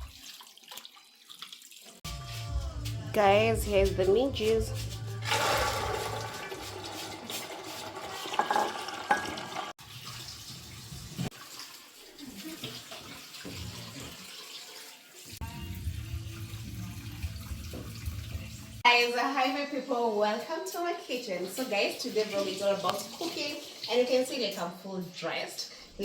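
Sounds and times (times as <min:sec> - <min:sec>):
running water rushing: 0:05.2 - 0:15.4.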